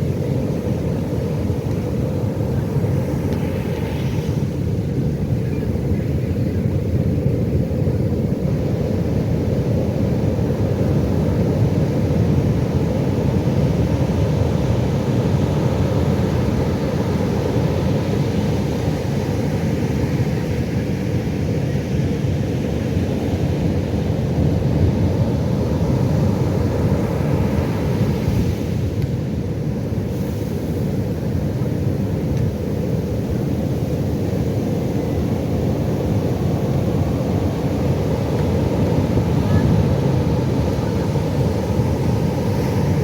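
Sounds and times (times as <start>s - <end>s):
ocean waves rumbling: 0.0s - 43.0s.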